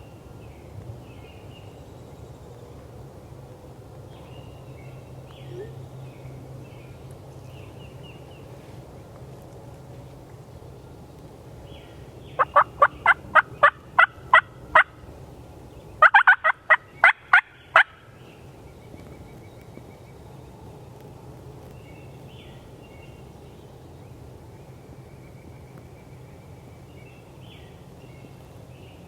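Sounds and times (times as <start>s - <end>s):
turkey yelping: 12.4s - 14.9s, 16.0s - 17.9s.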